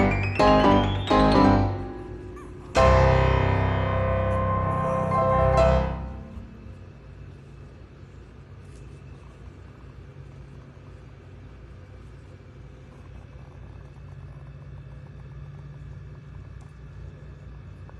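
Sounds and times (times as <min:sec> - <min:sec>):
constant low tone: 0:00.0 - 0:07.3
background noise: 0:00.0 - 0:13.2
low mechanical hum: 0:00.0 - 0:17.9.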